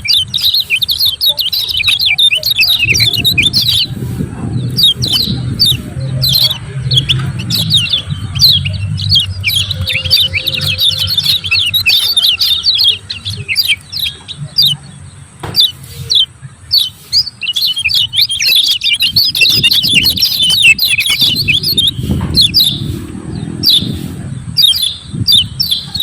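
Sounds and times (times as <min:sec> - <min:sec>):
bird chirping rapidly: 0:00.0 - 0:26.0
low rumble: 0:02.6 - 0:15.4, 0:19.0 - 0:26.0.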